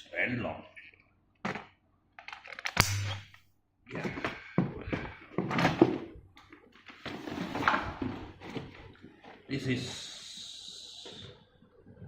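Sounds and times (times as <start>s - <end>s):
plastic vacuum parts clicking: 1.5s - 2.9s.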